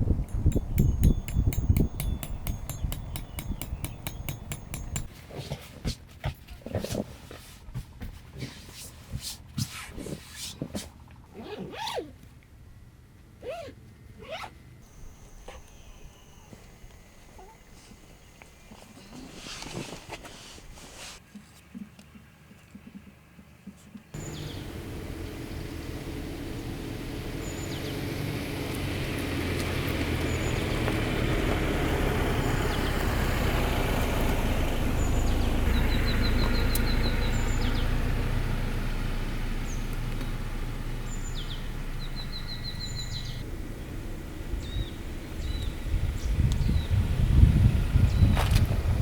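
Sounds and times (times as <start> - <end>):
low vehicle rumble: 0.0 - 5.1, 24.2 - 49.0
small birds chirping and trilling: 24.2 - 25.8, 27.2 - 29.2, 35.0 - 38.0, 41.0 - 43.4, 44.5 - 47.0.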